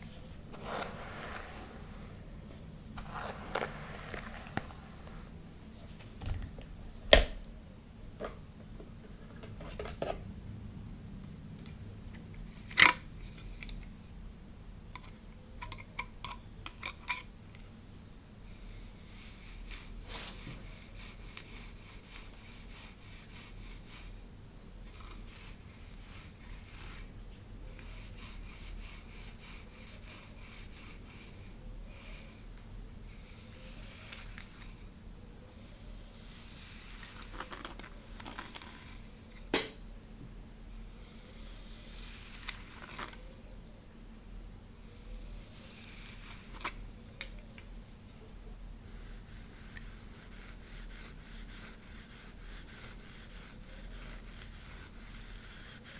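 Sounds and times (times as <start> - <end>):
hair being brushed: 0.0 - 5.5, 19.3 - 20.7.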